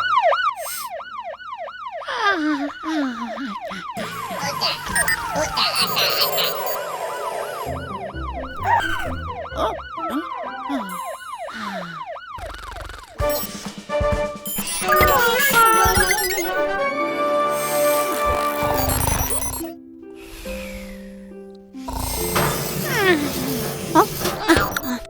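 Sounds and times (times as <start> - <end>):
cartoon siren yelping: 0.0 - 13.3, 14.7 - 16.7
cartoon music: 2.9 - 19.8, 21.9 - 25.0
falling whistle glide: 4.6 - 11.4.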